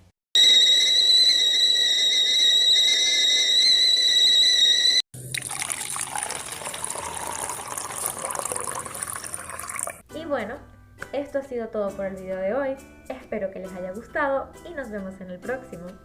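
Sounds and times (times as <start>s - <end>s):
high-pitched whistle: 0.4s - 5.0s
water pouring in a trickle: 5.2s - 10.0s.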